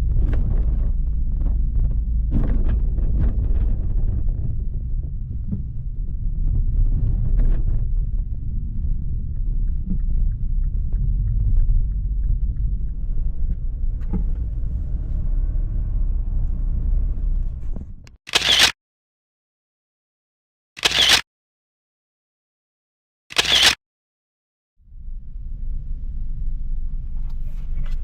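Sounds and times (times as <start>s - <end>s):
low vehicle rumble: 0.0s - 18.1s, 24.8s - 28.0s
camera shutter click effect: 18.3s - 18.8s, 20.8s - 21.2s, 23.3s - 23.8s.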